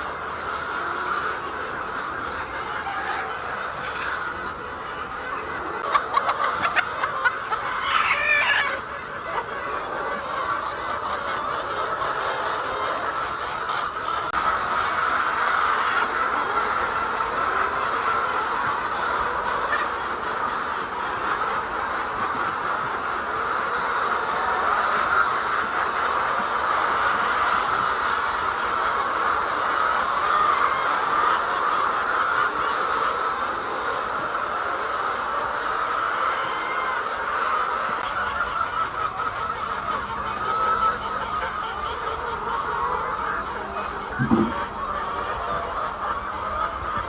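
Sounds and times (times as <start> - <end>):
hens clucking: 0.0 - 47.0
loud hen call: 0.0 - 47.0
sharp knocks: 44.2 - 44.6.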